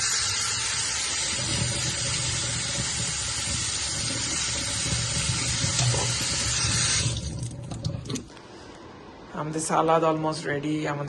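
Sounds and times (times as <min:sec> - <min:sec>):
tap running into sink: 0:01.3 - 0:08.2.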